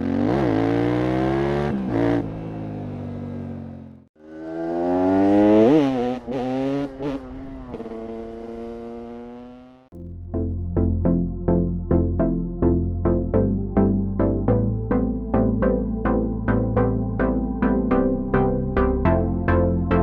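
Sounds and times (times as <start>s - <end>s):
two-stroke engine revving: 0.0s - 9.9s.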